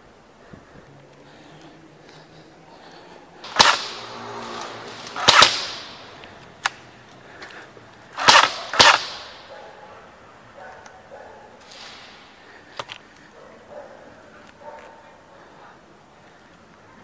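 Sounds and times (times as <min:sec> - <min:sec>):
airsoft gun cracks: 0:03.4 - 0:09.5, 0:11.6 - 0:13.3.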